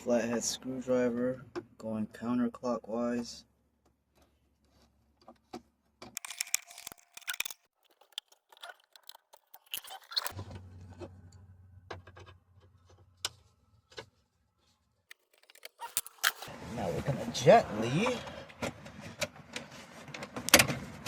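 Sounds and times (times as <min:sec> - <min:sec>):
screwdriver clicks and metallic rattling: 0:06.2 - 0:10.4, 0:15.1 - 0:16.5.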